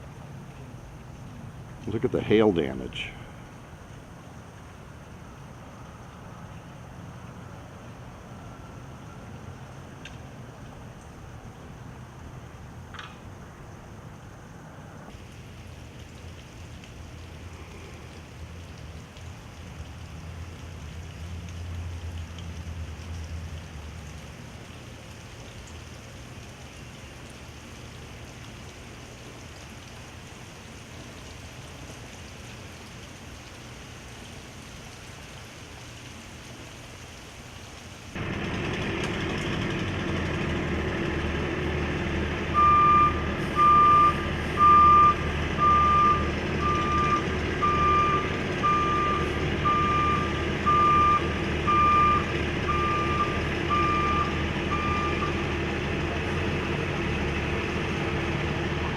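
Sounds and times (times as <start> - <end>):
low background hiss: 0.0 - 38.2
truck engine running: 38.2 - 58.9
reversing alarm beeping: 42.5 - 55.4.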